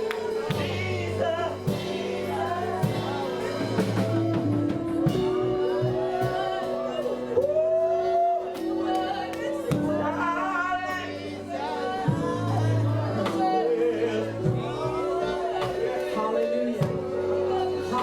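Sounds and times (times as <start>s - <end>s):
sustained instrumental chords: 0.0s - 18.0s
voices singing gospel: 0.0s - 18.0s.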